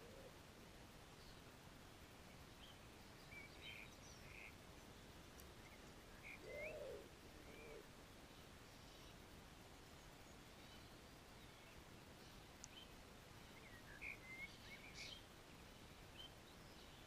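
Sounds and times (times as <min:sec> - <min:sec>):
bird cooing: 0:00.0 - 0:00.4, 0:06.2 - 0:07.9.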